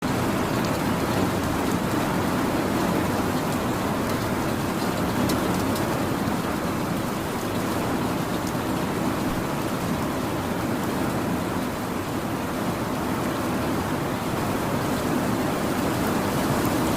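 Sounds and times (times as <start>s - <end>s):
steady rain hiss: 0.0s - 16.9s
raindrop ticks: 0.1s - 2.0s, 2.8s - 8.6s.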